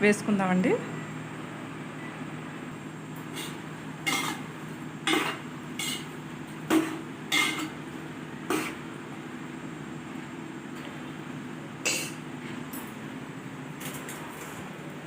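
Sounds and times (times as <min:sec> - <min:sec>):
steady low hum: 0:00.0 - 0:15.0
metal spoon clinking on pan: 0:04.1 - 0:04.4, 0:05.1 - 0:06.1, 0:06.7 - 0:07.8.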